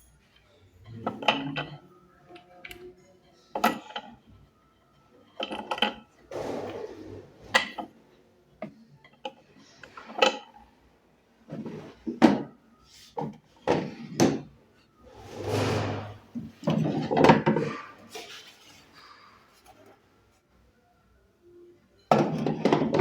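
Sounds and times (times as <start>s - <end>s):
wood sliding scrapes: 6.3s - 7.5s, 15.1s - 16.5s.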